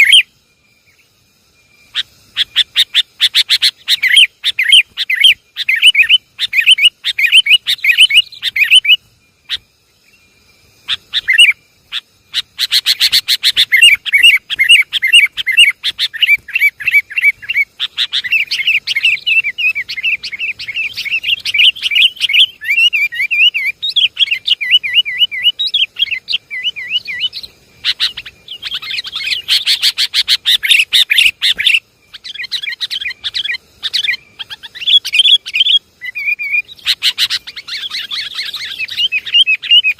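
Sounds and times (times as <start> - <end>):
bulbuls chattering and calling: 0.0 - 0.3, 1.9 - 9.6, 10.8 - 39.9.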